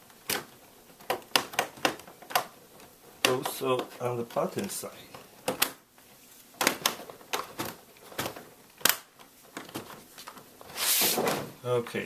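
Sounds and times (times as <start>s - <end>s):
handling noise: 0.0s - 11.6s
plastic clips clicking into place: 0.2s - 2.5s, 5.4s - 5.8s, 6.6s - 10.4s.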